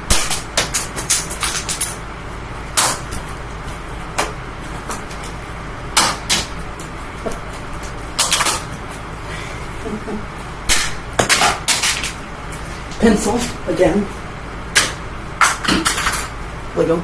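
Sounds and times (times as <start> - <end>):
box fan humming: 0.0 - 17.0
plastic pieces clattering on fan blades: 0.3 - 2.0, 15.6 - 16.3.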